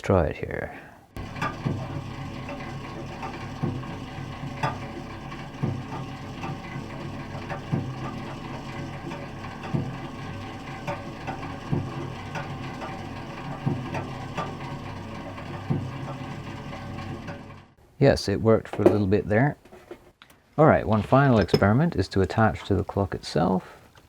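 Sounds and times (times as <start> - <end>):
steady low hum: 0.6 - 19.6
clockwork ticking: 1.2 - 17.7.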